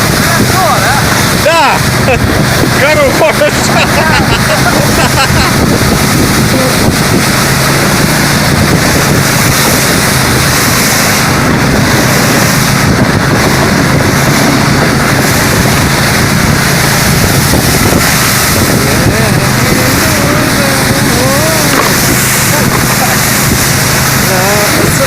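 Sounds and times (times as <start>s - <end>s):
snowmobile engine running: 0.0s - 25.0s
wind buffeting microphone: 0.0s - 25.0s.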